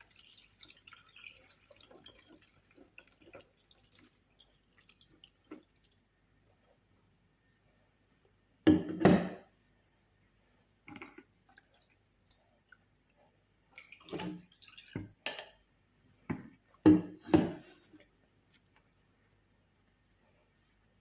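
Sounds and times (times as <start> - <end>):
liquid dripping and splashing: 0.0 - 7.1, 10.9 - 15.6.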